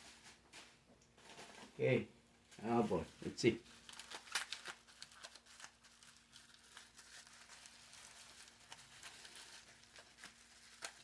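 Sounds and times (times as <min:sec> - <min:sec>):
packaging crinkling: 0:03.2 - 0:11.0.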